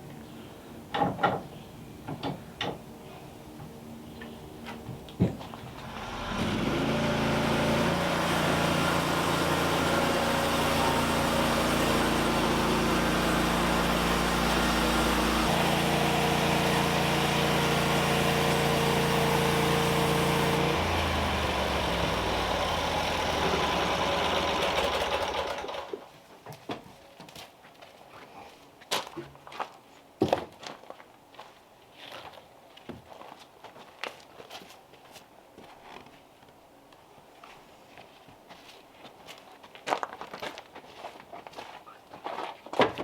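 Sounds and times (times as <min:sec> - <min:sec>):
small engine running: 0:05.8 - 0:26.0.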